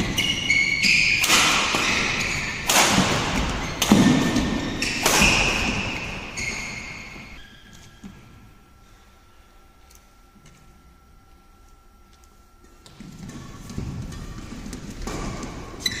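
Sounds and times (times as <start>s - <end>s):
racket hitting shuttlecock: 0.0s - 7.4s
short high squeaks: 3.6s - 8.1s, 15.8s - 16.0s.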